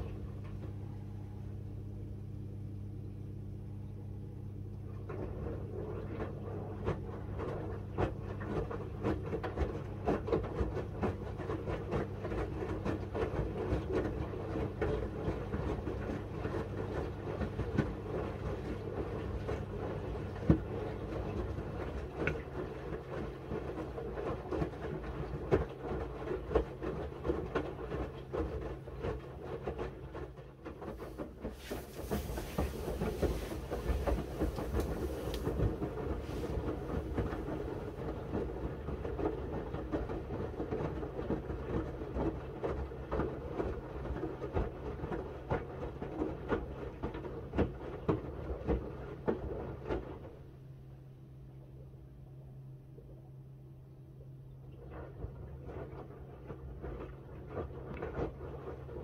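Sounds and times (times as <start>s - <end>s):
washing machine drum humming: 0.0s - 59.0s
laundry tumbling clatter: 5.1s - 50.3s.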